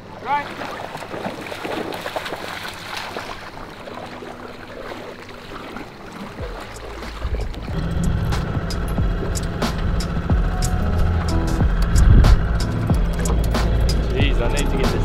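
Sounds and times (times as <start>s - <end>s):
water lapping against boat hull: 0.0s - 15.0s
low rumble: 6.4s - 15.0s.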